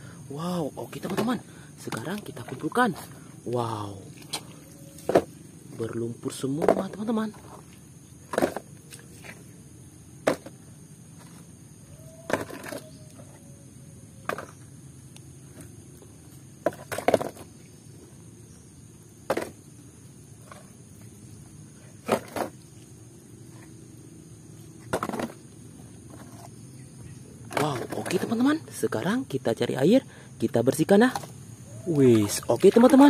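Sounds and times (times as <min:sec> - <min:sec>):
toy vehicles clacking and knocking: 0:12.3 - 0:12.9.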